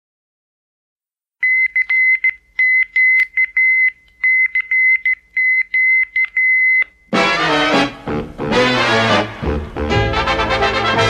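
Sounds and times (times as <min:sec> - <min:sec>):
morse code beeps: 0:01.4 - 0:07.0.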